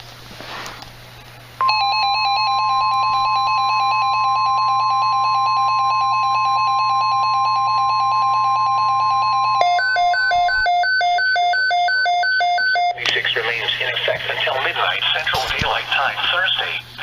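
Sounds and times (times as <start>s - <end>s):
rapid pulsing beep: 1.6s - 13.0s.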